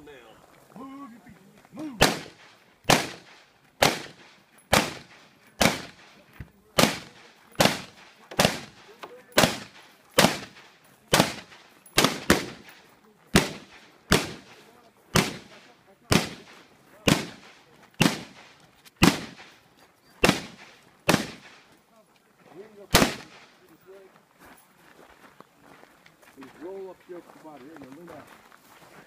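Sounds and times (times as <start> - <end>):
rifle shots: 1.9 - 6.2, 6.8 - 19.6, 20.2 - 21.7, 22.9 - 23.6.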